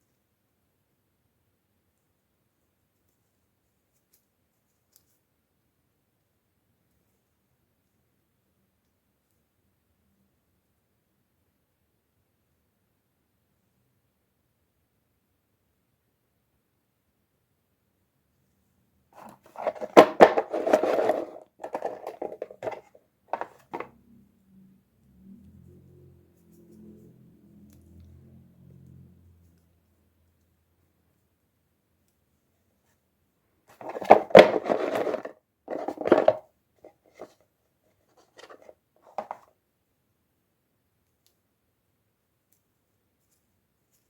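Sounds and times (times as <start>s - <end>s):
packaging crinkling and scraping: 19.2s - 23.9s, 33.7s - 37.4s, 38.1s - 39.4s.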